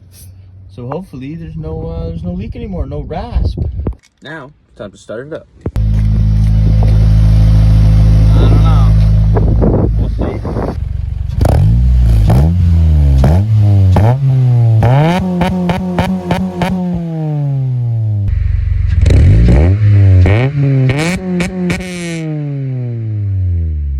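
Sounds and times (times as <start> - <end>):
exhaust crackles: 5.7 - 23.9
car engine revving: 5.8 - 23.9.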